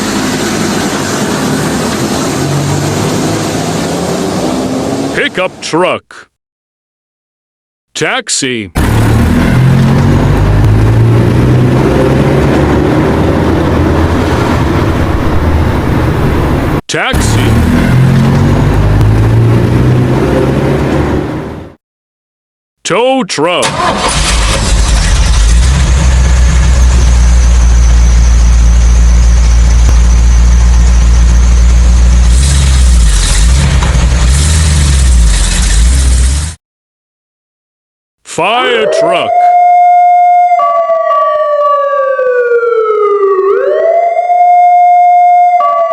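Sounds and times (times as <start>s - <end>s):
road and traffic noise: 0.0s - 6.2s, 8.0s - 21.8s, 23.5s - 36.6s
car engine running: 23.8s - 36.6s.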